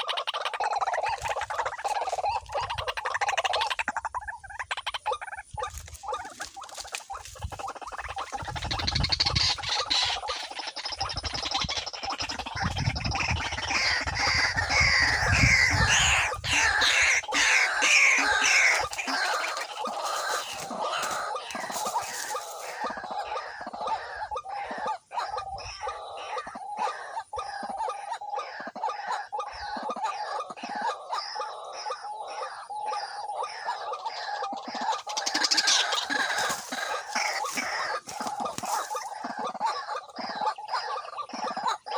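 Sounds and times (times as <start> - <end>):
waterhen harsh croaking calls: 0.0 - 41.9.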